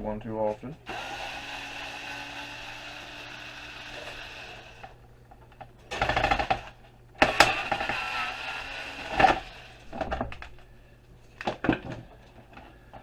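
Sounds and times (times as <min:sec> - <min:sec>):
electric driver running: 0:00.9 - 0:05.0, 0:05.9 - 0:09.9.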